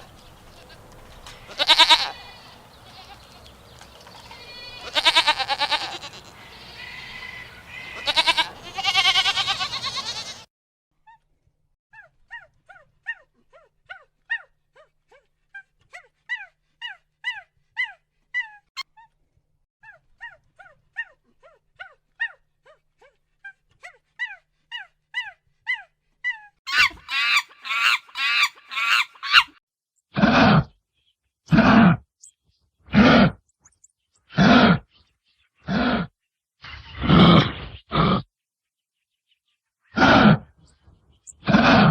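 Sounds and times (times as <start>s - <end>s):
rapid harsh animal calls: 0.0s - 10.4s, 26.7s - 29.5s
loud animal grunts: 30.2s - 30.7s, 31.5s - 32.0s, 32.9s - 33.4s, 34.4s - 34.8s, 35.6s - 36.1s, 36.7s - 38.3s, 40.0s - 40.5s, 41.4s - 41.9s.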